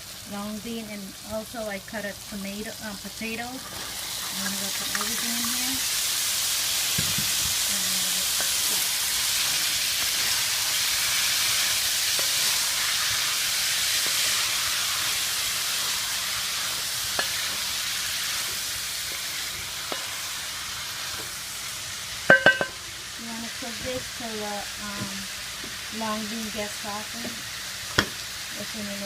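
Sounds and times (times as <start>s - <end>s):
vegetables sizzling in hot oil: 0.0s - 29.0s
utensil clicking on pan: 4.4s - 5.6s, 8.2s - 10.6s, 17.1s - 17.7s, 19.8s - 20.2s.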